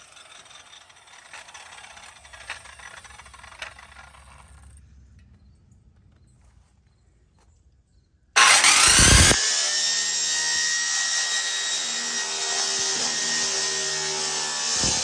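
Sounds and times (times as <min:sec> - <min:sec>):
circular saw cutting sheet metal: 0:00.0 - 0:03.8, 0:08.4 - 0:15.0.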